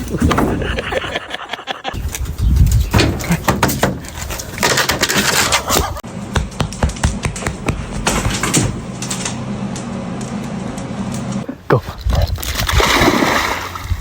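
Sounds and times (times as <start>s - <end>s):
irregular knocks and clatter: 2.6s - 11.4s.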